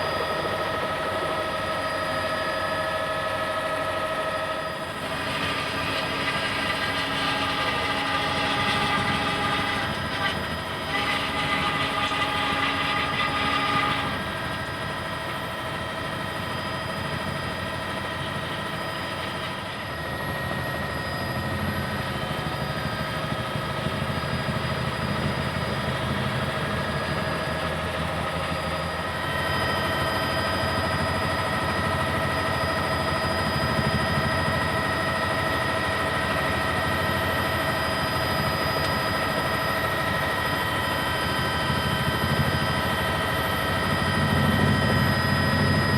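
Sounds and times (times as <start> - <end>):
helicopter engine and rotor drone: 0.0 - 45.9
high whining tones: 0.0 - 45.9.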